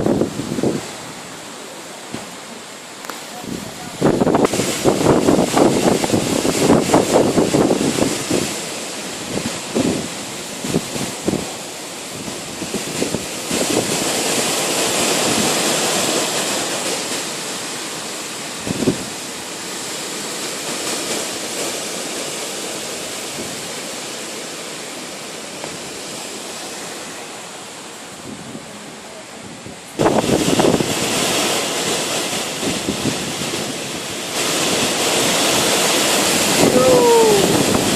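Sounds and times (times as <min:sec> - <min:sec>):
low wind buffet: 0:00.0 - 0:01.5, 0:02.2 - 0:37.9
gusting storm wind: 0:00.0 - 0:37.9.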